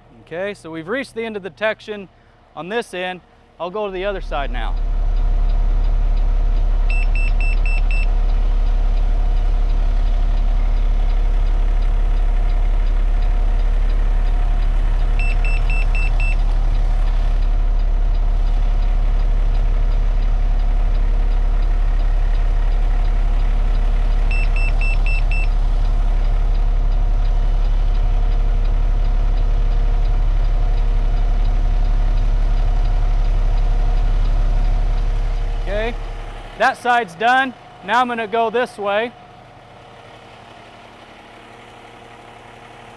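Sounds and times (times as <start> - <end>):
truck engine idling: 0.0 - 42.9
short high-pitched beeps: 6.9 - 8.1, 15.2 - 16.4, 24.3 - 25.5.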